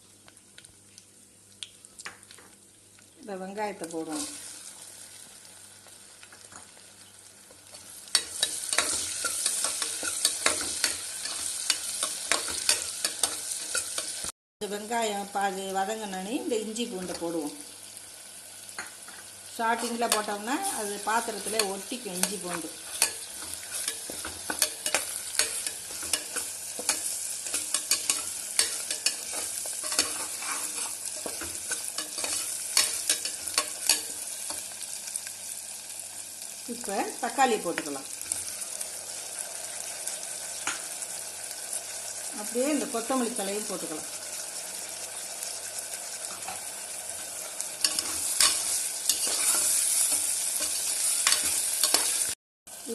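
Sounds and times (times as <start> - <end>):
oil sizzling: 0.0 - 52.9
spoon scraping pot: 20.9 - 34.1, 47.8 - 52.2.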